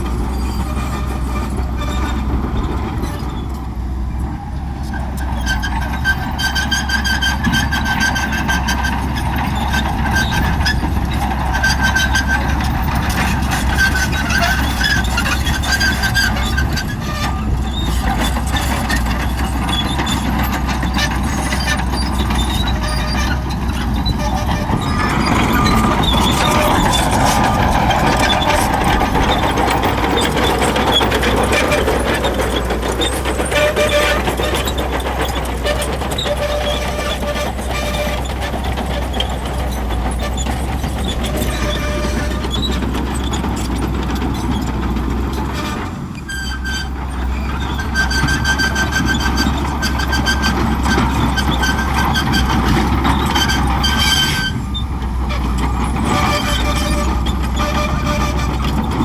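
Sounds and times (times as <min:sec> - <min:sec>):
diesel engine running: 0:00.0 - 0:59.0
steel tracks clattering: 0:05.0 - 0:59.0.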